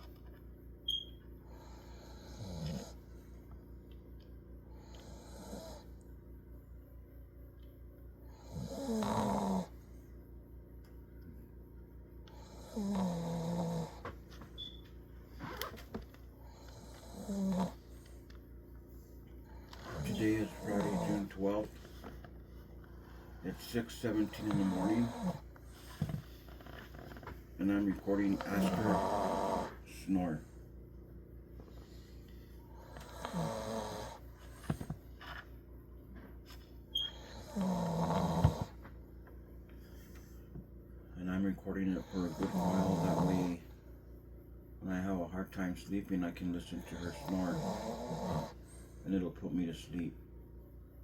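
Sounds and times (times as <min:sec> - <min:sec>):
dog snoring: 0:01.4 - 0:03.4, 0:04.7 - 0:06.0, 0:08.2 - 0:09.9, 0:12.2 - 0:15.6, 0:16.4 - 0:18.2, 0:19.4 - 0:30.6, 0:31.6 - 0:35.4, 0:36.5 - 0:39.0, 0:41.1 - 0:43.8, 0:46.7 - 0:49.2.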